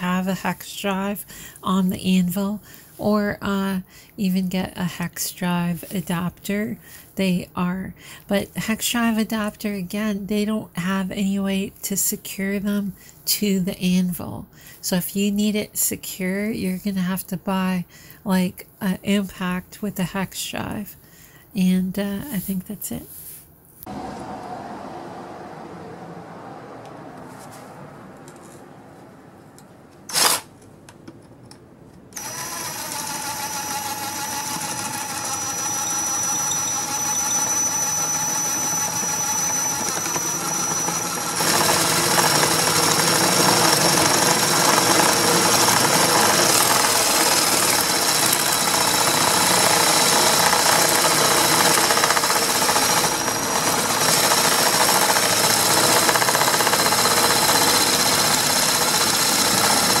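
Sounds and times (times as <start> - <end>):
impact wrench whining and hammering: 29.5 - 31.2, 32.1 - 60.0.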